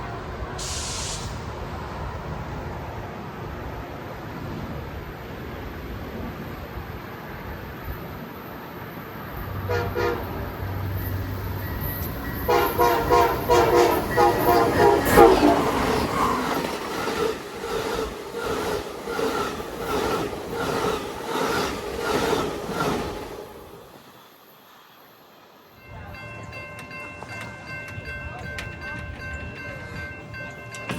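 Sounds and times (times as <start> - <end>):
locomotive air horn: 0.4 - 1.3, 9.6 - 10.5, 12.5 - 15.9
train wheels clattering on rails: 10.6 - 23.7, 26.4 - 30.9.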